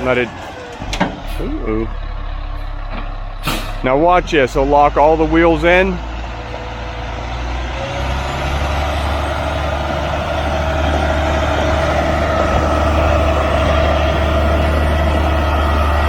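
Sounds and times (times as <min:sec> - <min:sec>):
diesel truck engine whining: 0:00.0 - 0:16.0.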